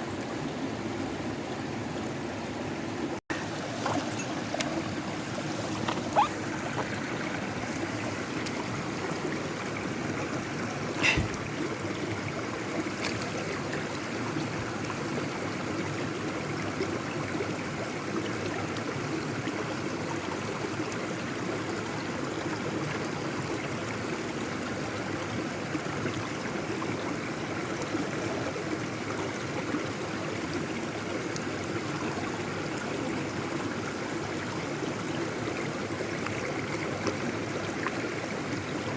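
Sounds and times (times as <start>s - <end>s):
water rushing over rocks: 3.0s - 16.5s.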